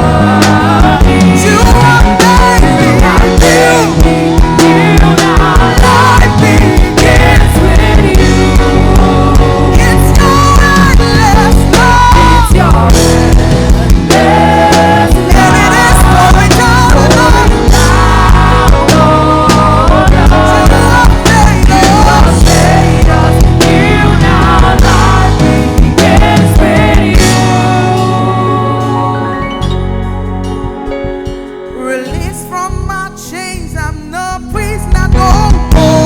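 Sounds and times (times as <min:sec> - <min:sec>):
drums: 0:00.0 - 0:31.5, 0:34.9 - 0:36.0
bass: 0:00.0 - 0:36.0
worship band playing: 0:00.0 - 0:36.0.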